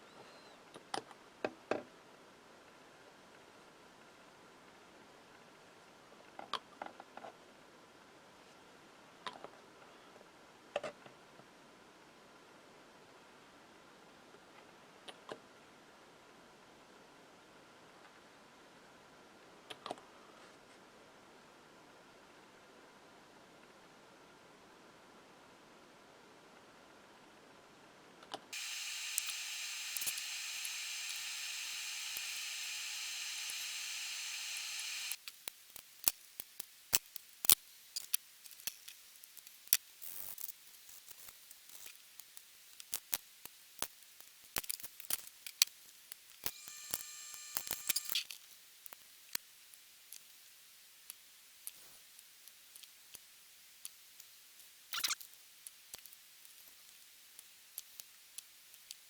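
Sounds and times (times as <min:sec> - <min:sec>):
steady whine: 0:28.6 - 0:35.2.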